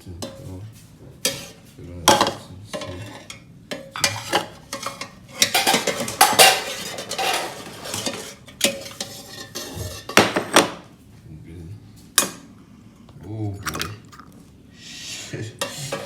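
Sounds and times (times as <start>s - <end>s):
metal utensil scraping inside pot: 1.2s - 1.6s, 2.2s - 10.2s, 15.2s - 16.0s.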